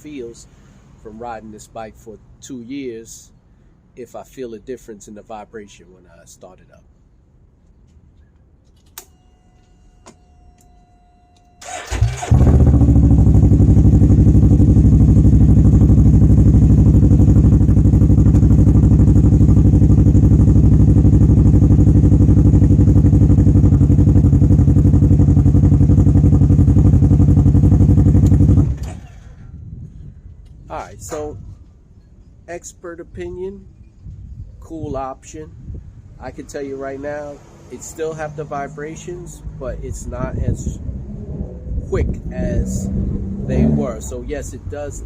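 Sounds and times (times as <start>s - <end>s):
engine starter cranking: 11.6s - 12.9s
engine idling loudly: 11.6s - 28.8s.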